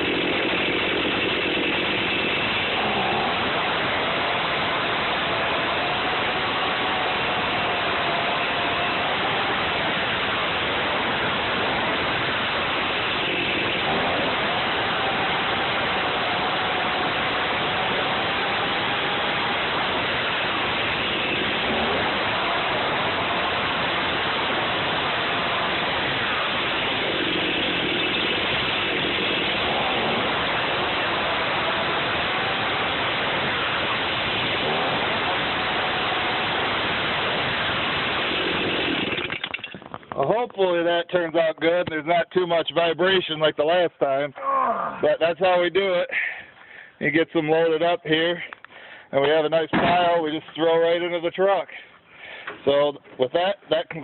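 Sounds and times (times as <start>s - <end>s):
chainsaw cutting wood: 0.0s - 40.0s.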